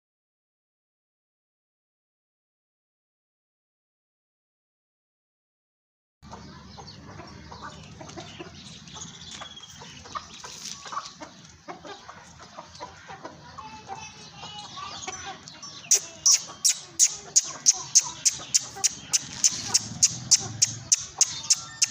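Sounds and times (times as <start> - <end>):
chickens clucking: 6.2 - 21.9.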